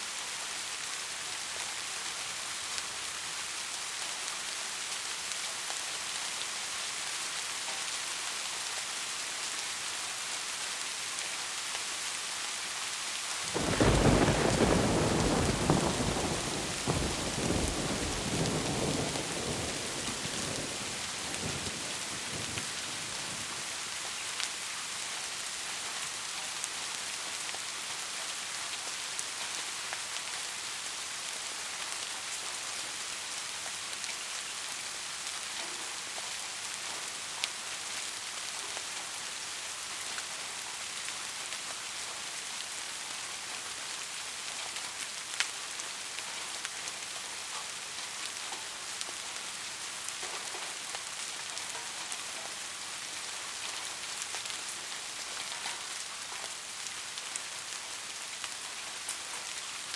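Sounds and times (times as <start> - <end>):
steady rain falling: 0.0 - 59.9
low thunder rumble: 13.6 - 23.5.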